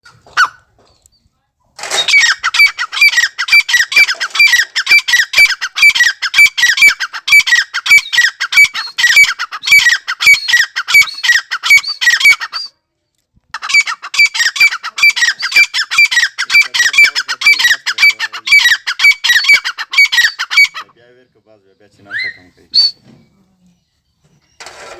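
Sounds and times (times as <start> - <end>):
francolin calling harshly: 1.8 - 12.7, 13.6 - 20.9.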